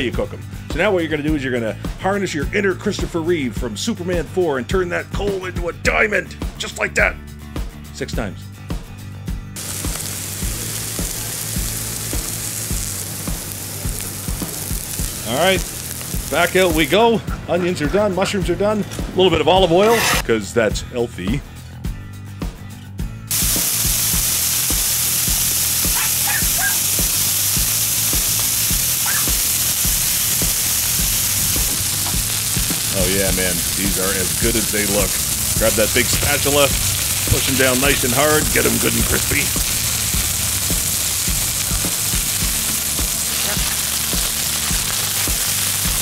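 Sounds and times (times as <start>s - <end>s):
background music with steady beat: 0.0s - 46.0s
patties sizzling on a griddle: 9.6s - 17.0s, 23.3s - 46.0s.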